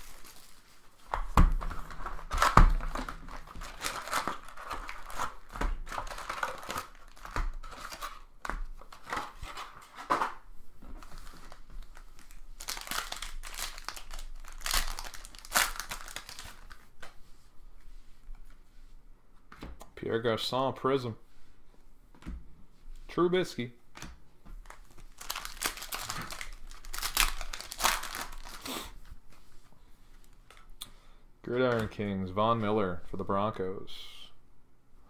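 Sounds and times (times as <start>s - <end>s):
wrapper torn and crinkled: 0.0s - 9.7s, 11.0s - 16.8s, 24.6s - 29.0s
cards handled: 0.0s - 10.4s.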